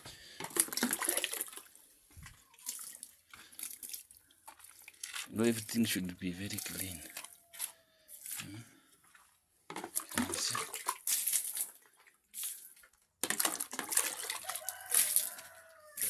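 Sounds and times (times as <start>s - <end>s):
water splashing onto floor: 0.3s - 1.8s, 2.6s - 5.5s, 9.8s - 16.0s.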